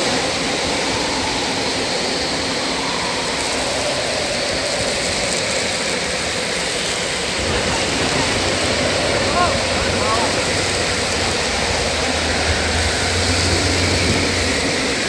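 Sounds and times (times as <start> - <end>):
wind blowing: 0.0 - 15.0.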